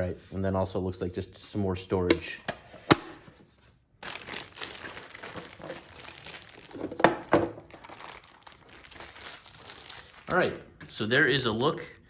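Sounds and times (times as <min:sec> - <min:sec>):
packaging crinkling and rustling: 0:04.0 - 0:10.7.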